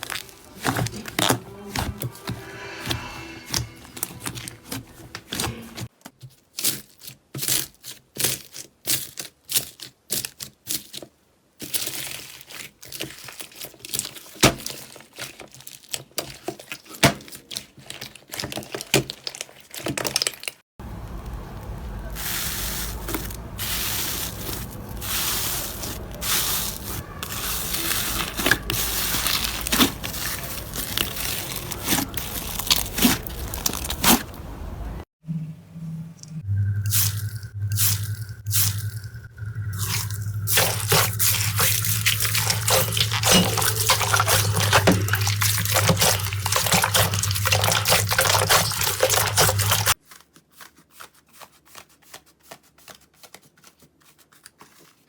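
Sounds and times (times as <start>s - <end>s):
slime crackling and popping: 27.6s - 34.3s.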